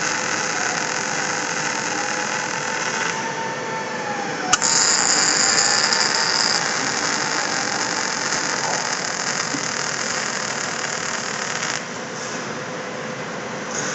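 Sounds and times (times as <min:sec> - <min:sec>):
welding equipment hissing: 0:00.0 - 0:03.2, 0:04.5 - 0:12.0.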